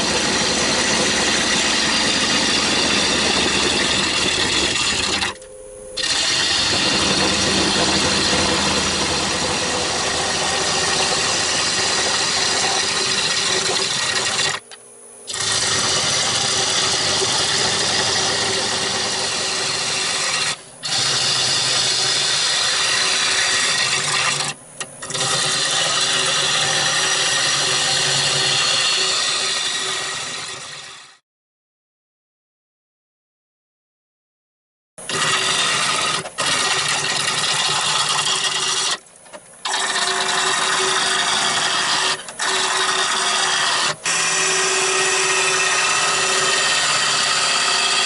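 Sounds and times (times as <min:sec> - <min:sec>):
lathe tool scraping wood: 0:00.0 - 0:14.6, 0:15.3 - 0:31.2, 0:35.0 - 0:39.0, 0:39.6 - 0:48.0
wood lathe hum: 0:00.0 - 0:31.2, 0:35.0 - 0:39.0, 0:39.6 - 0:48.0.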